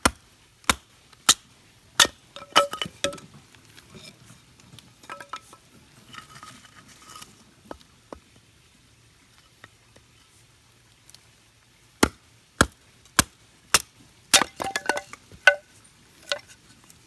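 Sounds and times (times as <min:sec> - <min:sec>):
metal cookware clinking: 0:05.0 - 0:05.6.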